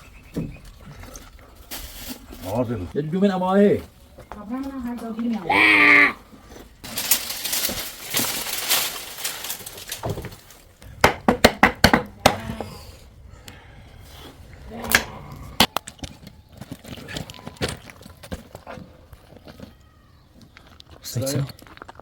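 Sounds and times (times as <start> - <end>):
sharp knocks and cracks: 6.8 - 12.6.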